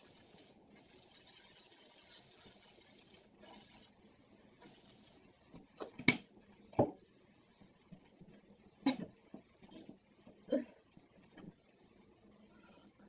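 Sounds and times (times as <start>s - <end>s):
aerosol spray hissing: 0.0s - 3.9s, 4.6s - 5.2s.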